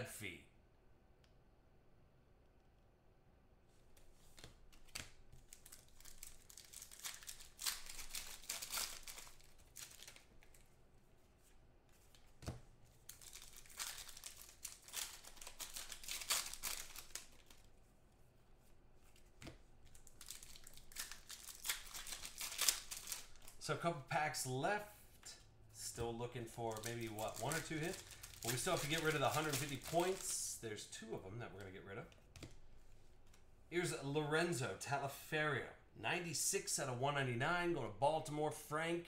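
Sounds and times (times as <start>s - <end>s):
foil wrappers tearing and crinkling: 5.4s - 10.6s, 13.1s - 17.7s, 19.9s - 23.6s, 26.7s - 30.3s.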